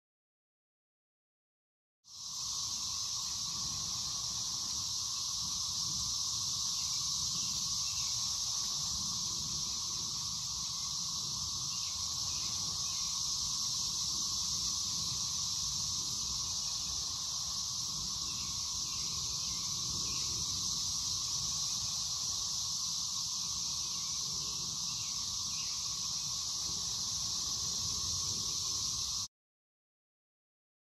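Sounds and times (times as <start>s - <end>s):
cicadas high-pitched drone: 2.1s - 29.3s.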